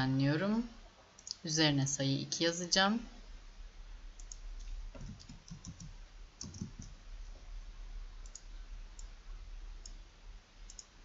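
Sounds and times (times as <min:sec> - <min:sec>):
steady low hum: 0:00.0 - 0:11.0
typing on computer keyboard: 0:04.2 - 0:07.0.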